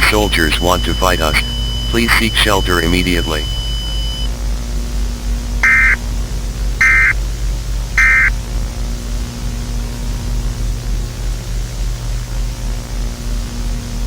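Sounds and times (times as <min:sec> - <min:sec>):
warbling data bursts: 0:00.0 - 0:04.3, 0:05.6 - 0:06.0, 0:06.8 - 0:07.2, 0:08.0 - 0:08.3
low hum: 0:00.0 - 0:14.0
tape hiss: 0:00.0 - 0:14.0.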